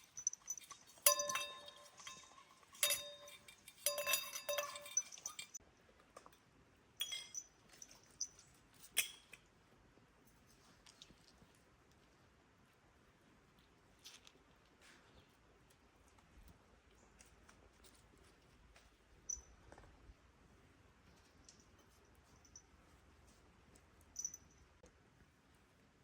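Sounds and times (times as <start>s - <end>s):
ringing clinks of hard objects: 0.0s - 5.6s, 7.0s - 8.4s, 24.2s - 24.7s.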